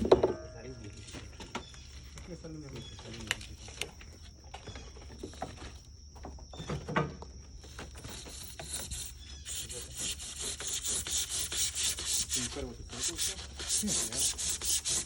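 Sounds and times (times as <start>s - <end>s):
hand saw cutting foam: 8.0s - 15.0s.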